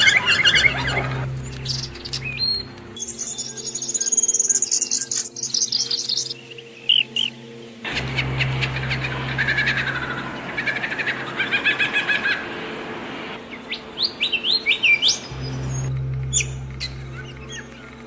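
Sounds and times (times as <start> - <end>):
steady low hum: 0.0 - 3.7, 7.4 - 18.0
songbirds chirping and trilling: 0.0 - 18.0.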